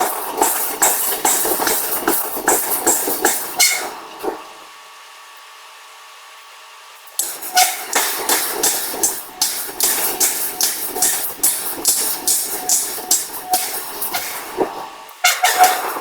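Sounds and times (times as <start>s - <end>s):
machine hum: 0.0s - 5.2s, 5.8s - 16.0s
forging hammer striking steel: 7.2s - 16.0s.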